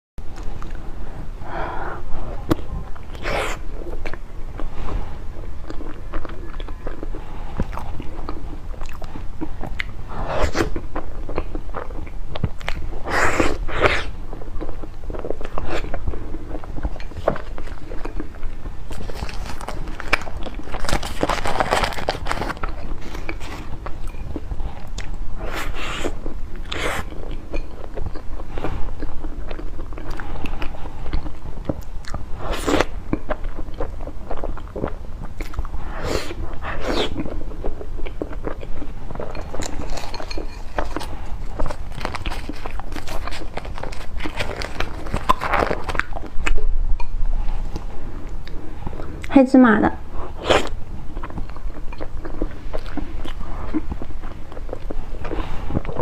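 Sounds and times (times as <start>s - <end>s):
wet biting and chewing: 5.6s - 46.7s.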